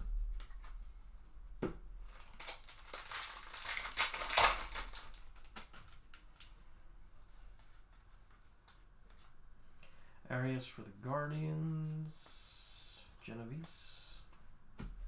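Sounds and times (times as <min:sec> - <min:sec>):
foil wrapper crinkling: 0:02.0 - 0:06.5.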